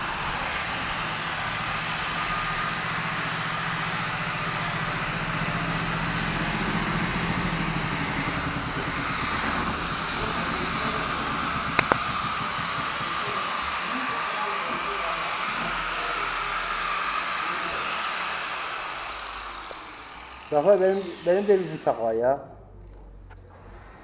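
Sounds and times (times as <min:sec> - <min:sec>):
machine pulsing with hiss: 0:00.0 - 0:21.9
sharp clicks: 0:08.8 - 0:13.4.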